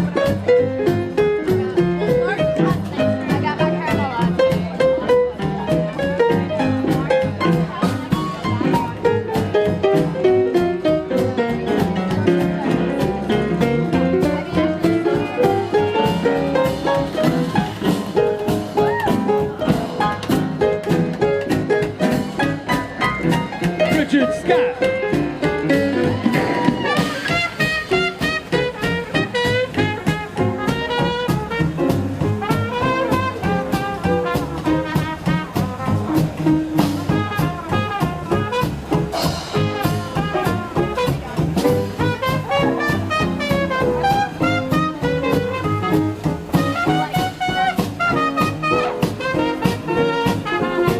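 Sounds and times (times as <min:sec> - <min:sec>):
jazz band playing: 0:00.0 - 0:50.9
trombone: 0:00.0 - 0:50.9
trumpet: 0:23.2 - 0:50.9.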